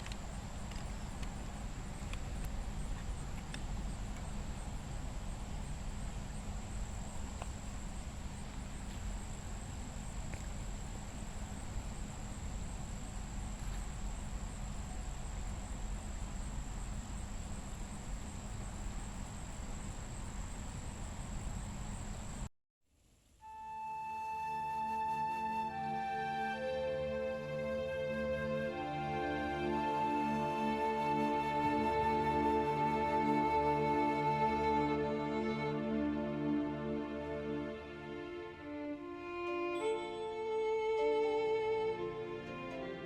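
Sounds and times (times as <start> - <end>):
crickets chirping: 0.0 - 22.5, 23.2 - 43.0
low outdoor rumble: 0.0 - 22.5.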